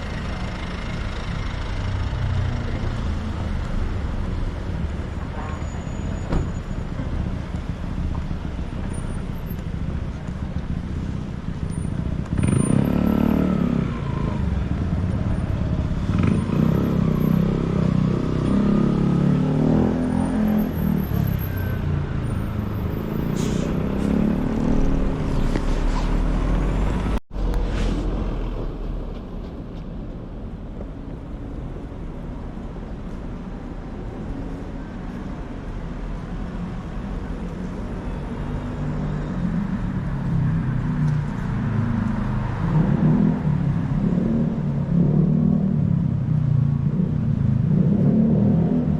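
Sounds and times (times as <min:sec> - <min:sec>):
road traffic: 0:00.0 - 0:48.9.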